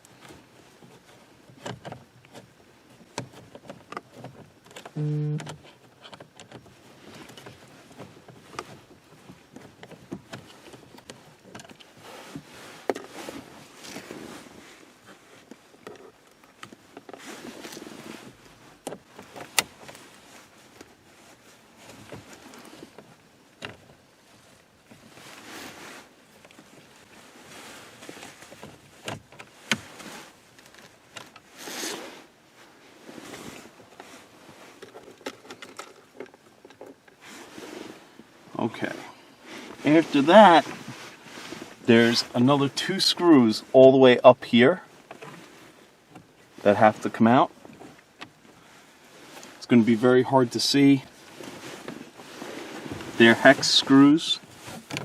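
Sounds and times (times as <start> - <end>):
short beep: 5.0 - 5.5.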